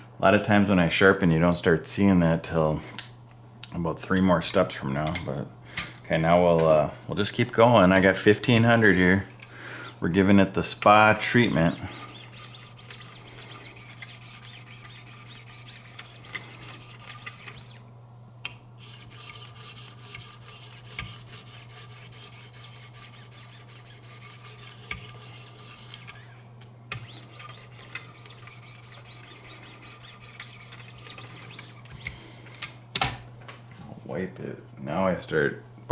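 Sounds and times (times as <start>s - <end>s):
sharpening stones scraping knife blade: 11.5s - 17.8s, 18.8s - 26.3s.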